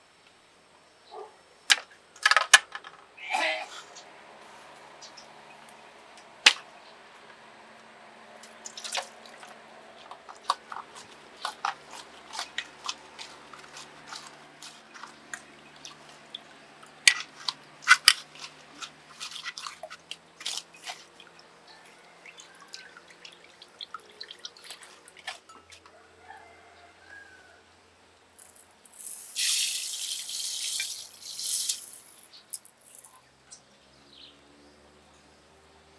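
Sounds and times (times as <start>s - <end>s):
small drips: 8.4s - 26.0s.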